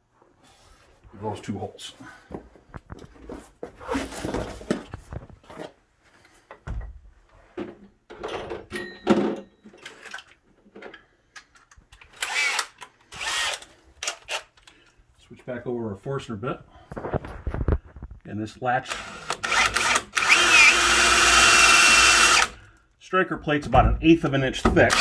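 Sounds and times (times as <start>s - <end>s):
hand tools clicking and knocking: 18.9s - 22.6s, 24.6s - 25.0s.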